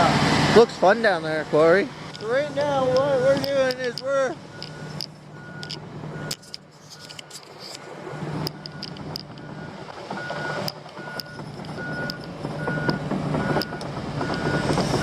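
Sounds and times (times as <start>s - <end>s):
diesel engine hum: 0.0s - 15.0s
backup alarm beeping: 2.2s - 7.1s, 8.1s - 15.0s.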